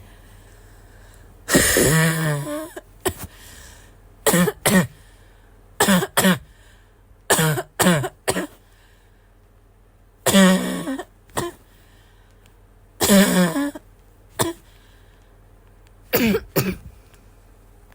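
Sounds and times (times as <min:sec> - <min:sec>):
wheezy barking cough: 0:01.5 - 0:03.4, 0:04.2 - 0:05.0, 0:05.8 - 0:06.5, 0:07.3 - 0:08.6, 0:10.2 - 0:11.7, 0:13.0 - 0:13.8, 0:14.4 - 0:14.7, 0:16.1 - 0:16.9.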